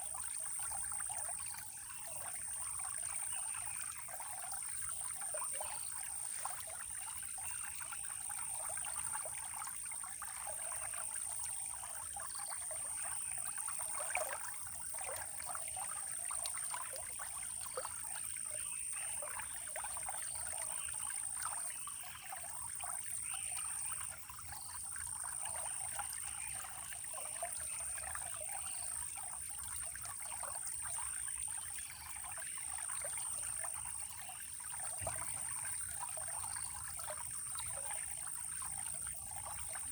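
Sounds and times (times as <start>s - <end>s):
water trickling and splashing: 0.0s - 39.9s.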